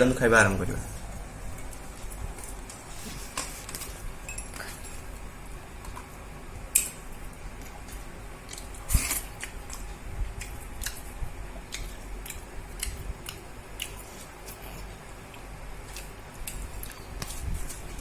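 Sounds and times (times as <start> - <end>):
person chewing food: 6.7 - 18.0.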